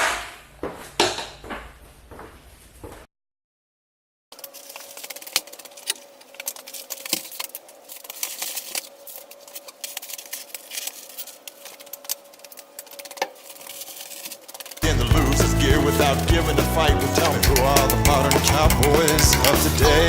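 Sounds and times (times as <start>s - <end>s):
insulation rustling and crinkling: 4.4s - 14.8s
sharp clicks and taps: 17.2s - 19.8s.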